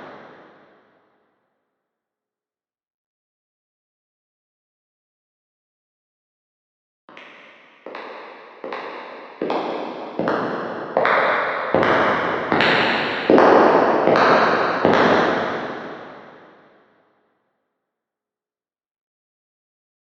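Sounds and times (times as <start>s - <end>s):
echoing footsteps on hard floor: 7.1s - 16.2s.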